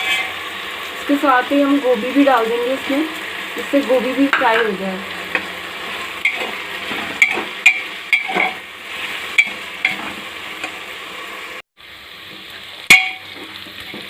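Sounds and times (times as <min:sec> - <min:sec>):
vegetables sizzling in oil: 0:00.0 - 0:14.0
sharp metal clank: 0:06.2 - 0:08.6, 0:12.9 - 0:13.4
spoon knocking metal pot: 0:06.2 - 0:08.6, 0:12.9 - 0:14.0.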